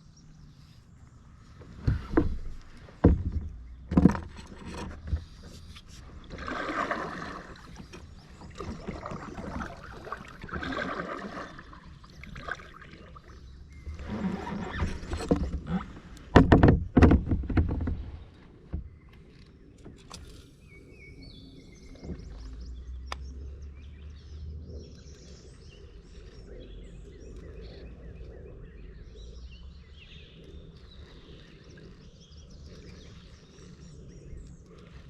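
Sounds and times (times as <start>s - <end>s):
water swishing: 0.6s - 23.5s, 24.9s - 35.0s
knocks against kayak hull: 1.6s - 5.3s, 16.3s - 18.9s.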